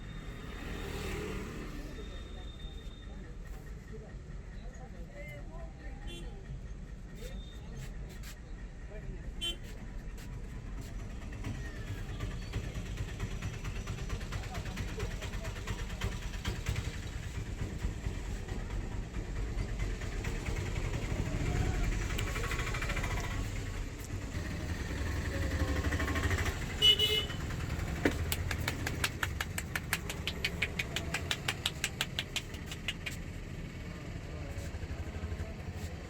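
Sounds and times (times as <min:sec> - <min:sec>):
road traffic rumble: 0:00.0 - 0:36.0
car horn toot: 0:26.6 - 0:27.7
quick even taps: 0:27.8 - 0:33.3.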